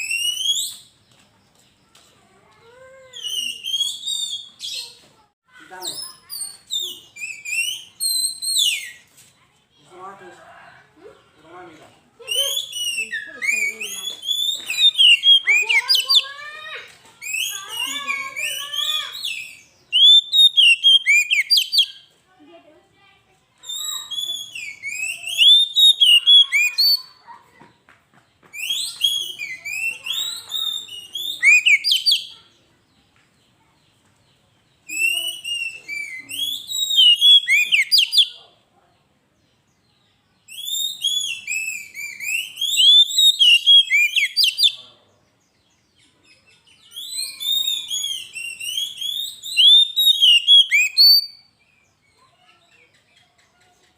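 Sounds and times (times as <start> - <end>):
bird singing whistled notes: 0.0 - 1.0, 3.1 - 5.0, 5.8 - 9.1, 12.2 - 22.1, 23.6 - 27.2, 28.5 - 32.6, 34.8 - 38.4, 40.0 - 44.8, 45.5 - 53.1.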